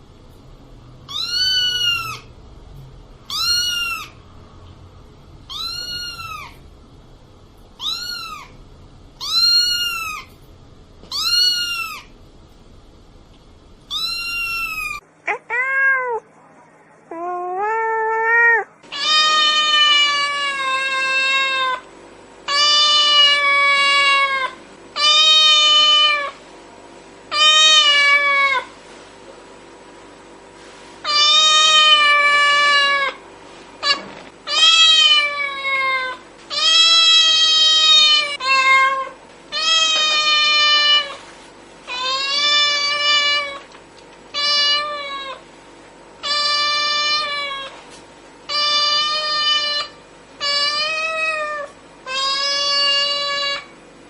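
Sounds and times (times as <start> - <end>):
cat meowing loudly: 1.1 - 2.3, 3.3 - 4.2, 5.5 - 6.6, 7.8 - 8.6, 9.2 - 10.3, 11.1 - 12.1, 13.9 - 16.2, 17.6 - 21.8, 31.1 - 33.2, 33.8 - 41.2, 48.5 - 53.7.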